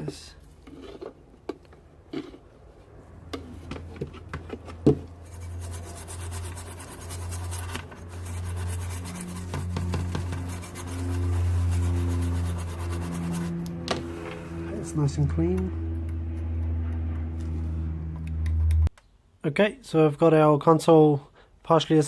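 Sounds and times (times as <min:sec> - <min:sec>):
low hum: 0:05.1 - 0:19.0
brush scrubbing circuit board: 0:05.2 - 0:13.7.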